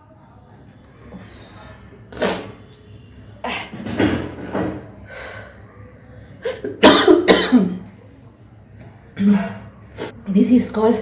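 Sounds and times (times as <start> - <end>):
woman coughing: 6.8 - 7.8.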